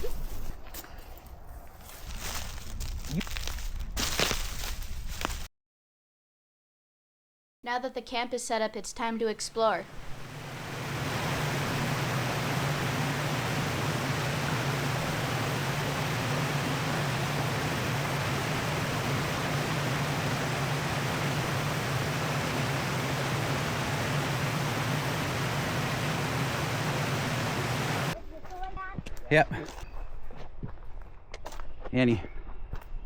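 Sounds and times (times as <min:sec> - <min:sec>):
steady rushing noise: 0:09.8 - 0:28.2.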